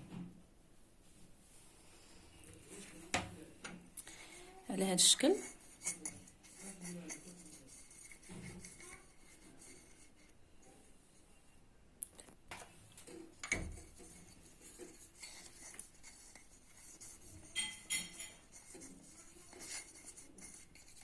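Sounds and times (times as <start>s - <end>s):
faint rubbing: 5.2s - 11.4s, 13.1s - 21.0s.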